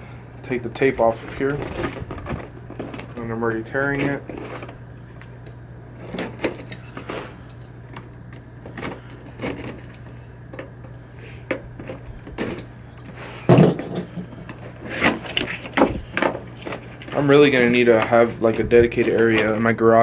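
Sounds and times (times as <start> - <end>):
packing tape peeling and tearing: 0.9 - 10.7, 14.4 - 19.8.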